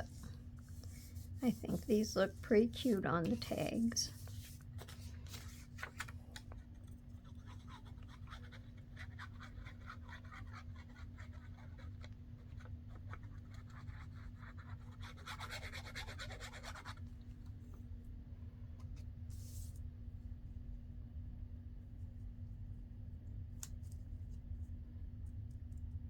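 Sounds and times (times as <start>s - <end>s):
faint steady hum: 0.0s - 26.0s
paper rubbing and rustling: 0.1s - 2.6s, 4.1s - 17.0s.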